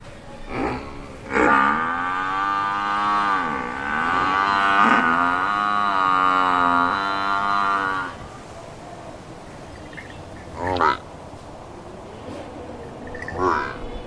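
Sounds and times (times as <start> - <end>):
water buffalo mooing: 0.4 - 8.3, 10.0 - 11.1, 13.1 - 13.9.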